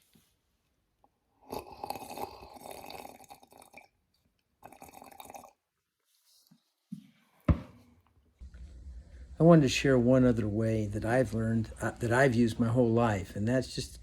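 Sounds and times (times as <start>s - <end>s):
slurping sips of water: 1.4s - 4.0s, 4.6s - 5.6s.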